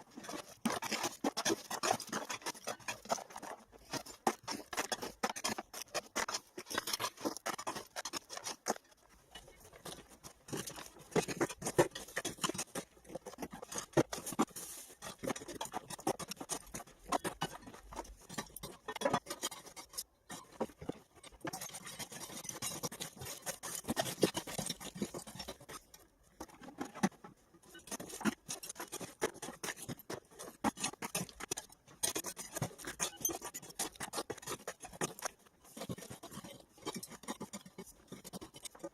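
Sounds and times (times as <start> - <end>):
hand tools scraping rubble: 0.0 - 38.9.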